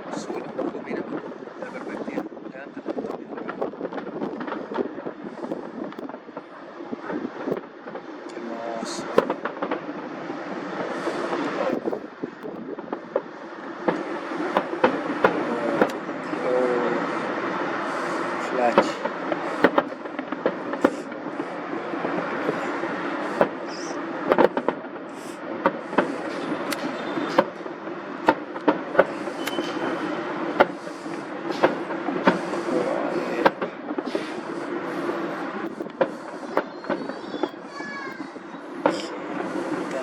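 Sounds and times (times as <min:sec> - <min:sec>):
fireworks bangs and cracks: 0:00.0 - 0:40.0
crowd noise: 0:01.3 - 0:40.0
warbling firework whistle: 0:14.1 - 0:40.0.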